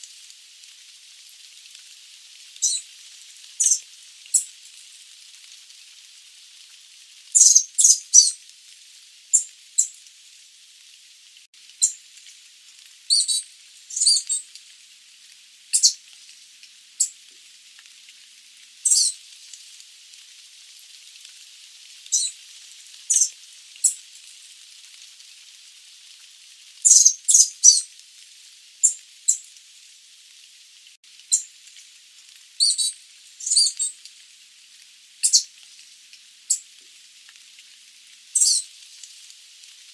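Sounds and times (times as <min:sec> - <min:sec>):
faint steady hiss: 0:00.0 - 0:39.9
bird calling high-pitched notes: 0:07.4 - 0:08.3.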